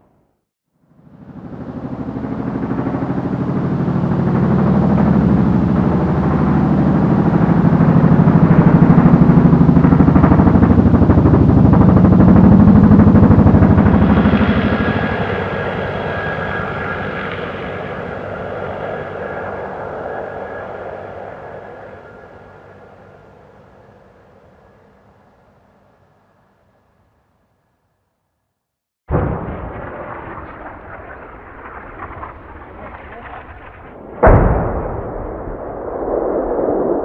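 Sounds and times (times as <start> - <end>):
passing vehicle mechanical noise: 13.4 - 24.8.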